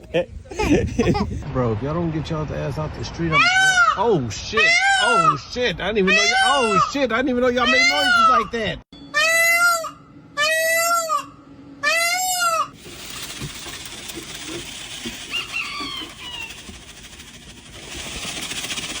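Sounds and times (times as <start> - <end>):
peacock wailing calls: 9.1 - 12.8, 14.3 - 17.1.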